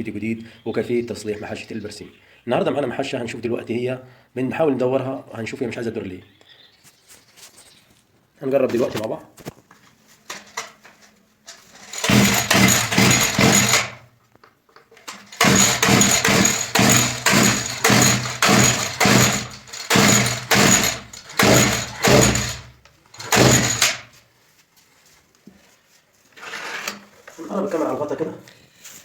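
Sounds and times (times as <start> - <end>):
mower engine cranking and sputtering: 11.5 - 14.1, 14.9 - 24.2.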